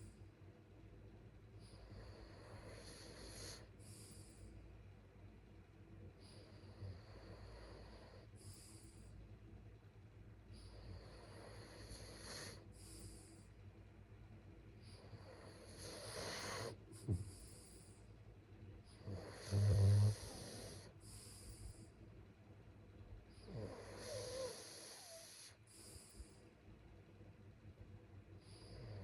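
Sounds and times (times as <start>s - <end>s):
person snoring: 19.0s - 20.9s.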